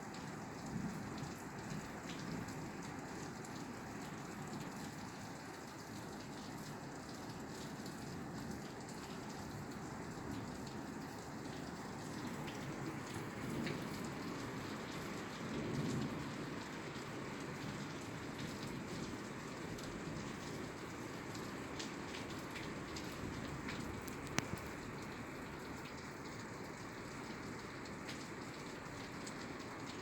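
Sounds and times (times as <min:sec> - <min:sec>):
rain falling on a roof: 0:00.0 - 0:30.0
low rumble of thunder: 0:12.7 - 0:20.6.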